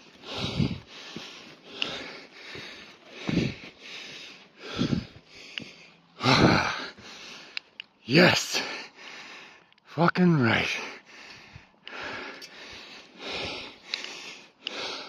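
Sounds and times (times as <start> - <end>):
person breathing hard: 0.0 - 7.8, 8.5 - 9.7, 10.7 - 15.0.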